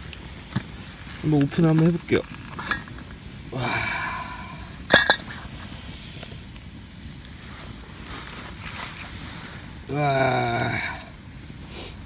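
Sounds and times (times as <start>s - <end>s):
metal pot ringing scrape: 4.9s - 5.4s.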